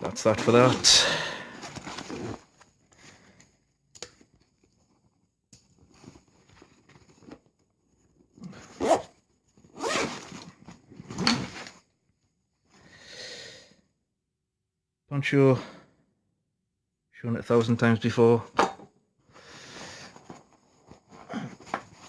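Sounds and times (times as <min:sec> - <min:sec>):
rustling and handling of gear: 0:00.0 - 0:12.8, 0:19.7 - 0:22.0
bag zipper pulled open: 0:08.5 - 0:09.1, 0:09.7 - 0:11.6.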